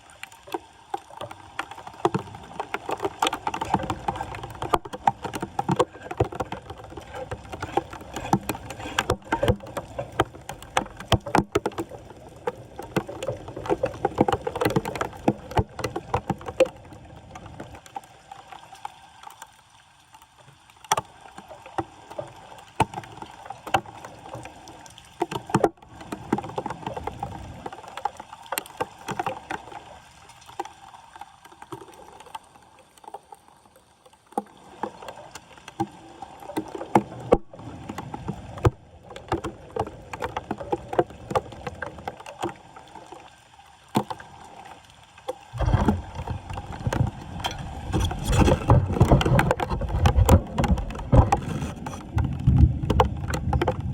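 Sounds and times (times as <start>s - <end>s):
floodwater sloshing and splashing: 0.0s - 53.9s
debris clicking and scraping: 45.6s - 52.1s.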